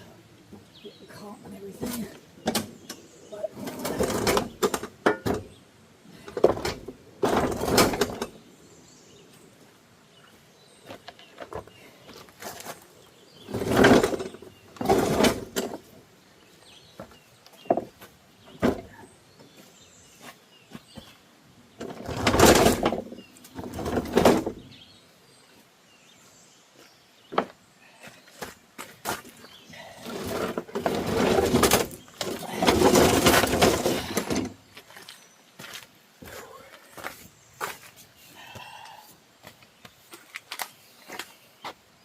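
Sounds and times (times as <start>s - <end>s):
mower deck scraping and sliding: 1.8s - 5.6s, 6.3s - 8.4s, 13.3s - 16.0s, 16.9s - 19.0s, 21.8s - 24.8s, 29.8s - 34.6s.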